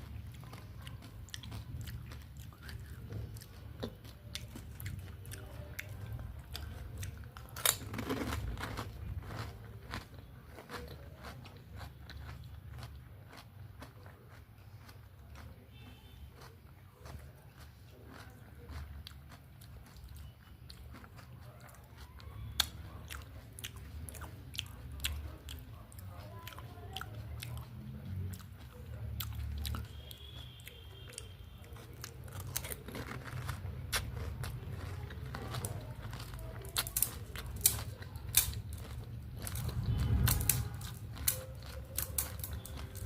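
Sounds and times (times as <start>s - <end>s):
wet chewing and crunching: 0.0s - 43.0s
crisp shells cracking in mouth: 0.4s - 14.0s, 31.1s - 43.0s.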